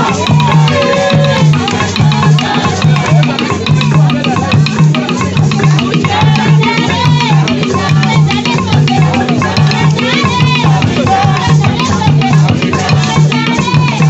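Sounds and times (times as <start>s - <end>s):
song with bass and percussion: 0.0s - 14.0s.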